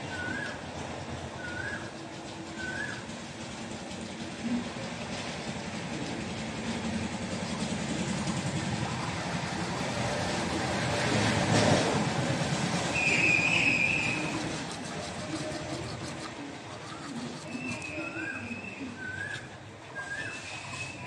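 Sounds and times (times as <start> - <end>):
person brushing teeth: 12.6 - 18.4.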